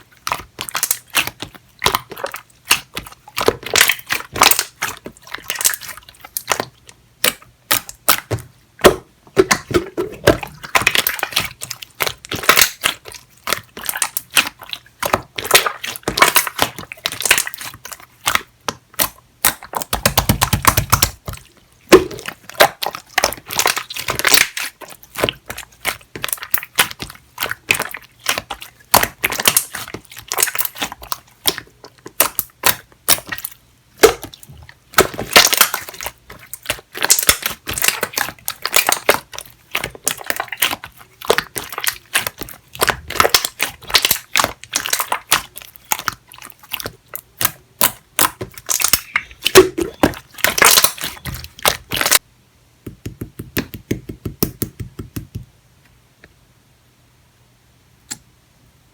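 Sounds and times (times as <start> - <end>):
slime squeezed by hand: 32.2 - 52.2.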